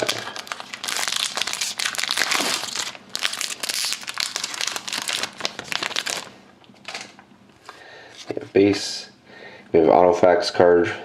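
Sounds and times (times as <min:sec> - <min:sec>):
foil wrapper tearing and crinkling: 0:00.0 - 0:06.3.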